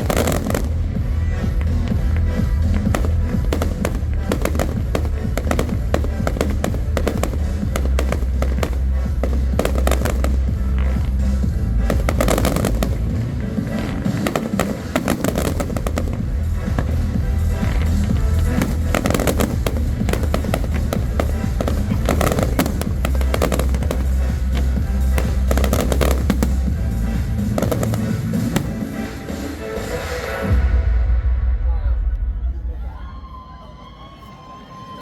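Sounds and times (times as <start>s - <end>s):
loud music with heavy bass: 0.0s - 13.2s, 14.2s - 29.3s
fireworks crackling and banging: 0.0s - 30.5s.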